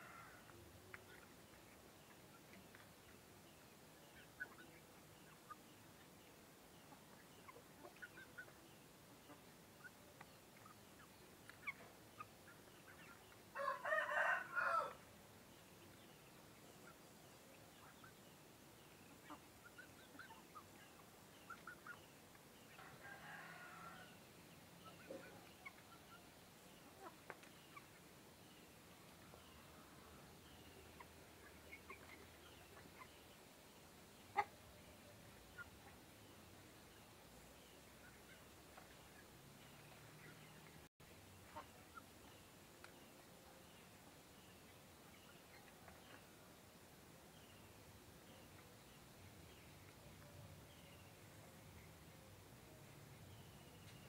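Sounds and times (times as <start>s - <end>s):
chickens clucking and chirping: 0.0s - 54.0s
rooster crowing: 13.6s - 15.0s, 22.8s - 24.2s.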